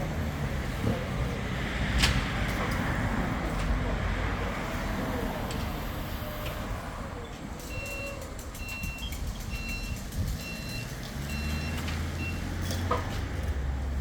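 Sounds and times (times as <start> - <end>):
reversing alarm beeping: 7.6 - 12.5.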